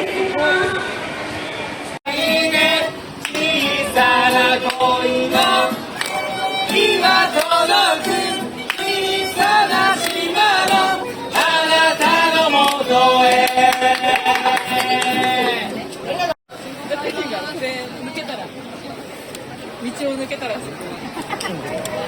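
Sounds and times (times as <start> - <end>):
music with voices singing: 2.1 - 16.0.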